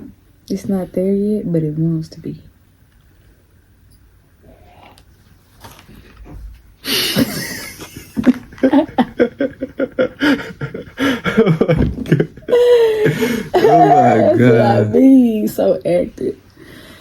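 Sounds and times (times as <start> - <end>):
people laughing hard: 6.9 - 14.9.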